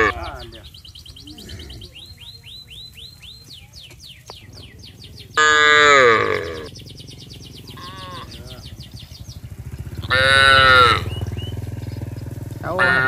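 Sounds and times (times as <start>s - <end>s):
cows mooing: 0.0s - 0.5s, 5.4s - 6.7s, 7.7s - 8.6s, 9.6s - 11.6s, 12.6s - 13.0s
bird chirping rapidly: 0.0s - 13.0s.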